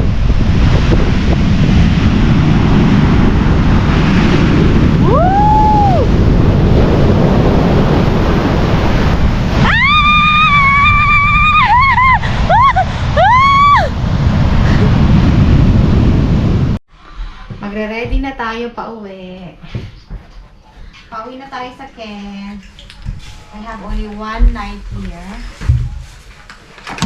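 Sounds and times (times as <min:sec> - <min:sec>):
sea surf: 0:00.0 - 0:16.8
wind on microphone: 0:00.0 - 0:16.8.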